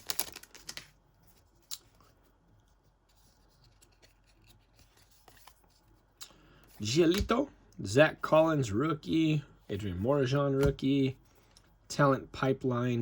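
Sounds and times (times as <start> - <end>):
wrapper crinkle: 0.0 - 1.9
cards ticking and rustling: 0.0 - 2.2.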